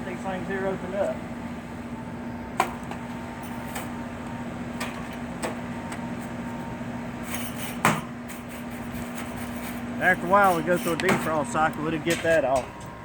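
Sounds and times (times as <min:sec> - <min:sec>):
steady low hum: 0:00.0 - 0:13.0
ice scraping: 0:08.4 - 0:11.5.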